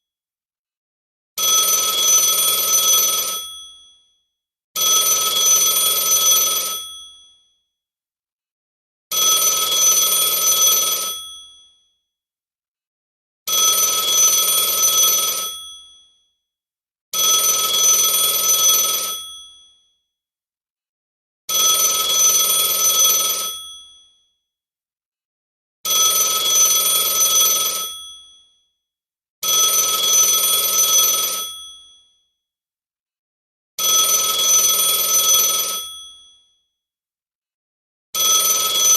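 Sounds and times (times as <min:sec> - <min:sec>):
telephone ringing: 0:09.1 - 0:11.4, 0:29.6 - 0:31.7.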